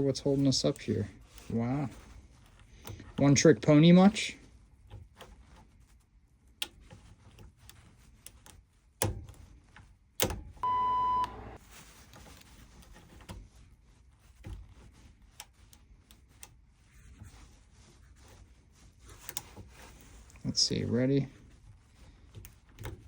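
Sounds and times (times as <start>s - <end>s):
steady beep tone: 10.6s - 11.6s.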